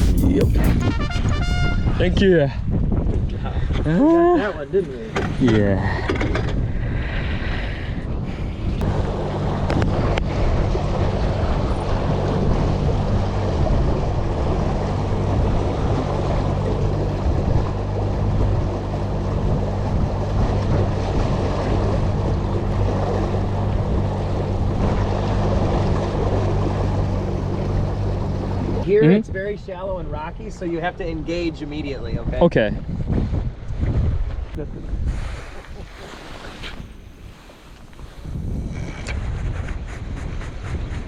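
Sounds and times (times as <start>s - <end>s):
motorboat engine running: 0.0s - 2.1s, 8.1s - 41.0s
wind and water rushing: 0.0s - 41.0s.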